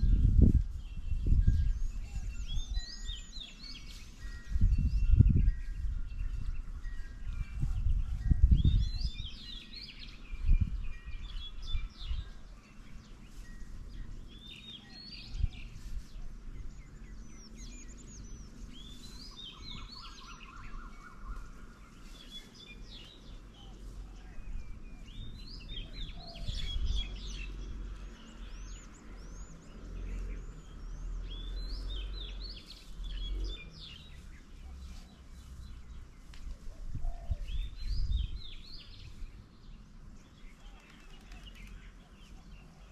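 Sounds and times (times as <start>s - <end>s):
birds chirping and singing: 0.0s - 42.9s
bird trill: 0.8s - 15.8s, 16.6s - 34.4s.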